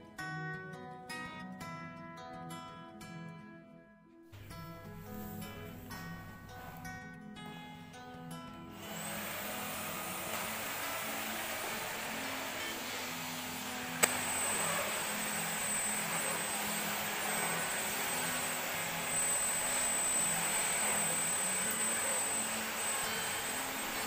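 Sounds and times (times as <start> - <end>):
appliance motor running: 8.7 - 24.0
thin high whine: 8.8 - 24.0
sharp click: 14.0 - 14.3.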